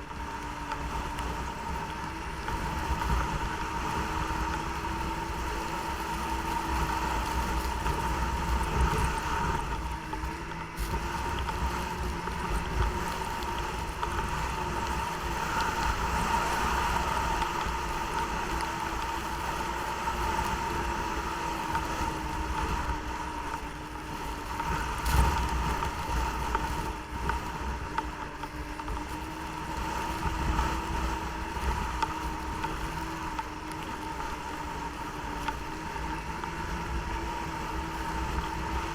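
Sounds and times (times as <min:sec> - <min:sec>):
snowmobile engine running: 0:00.0 - 0:38.9.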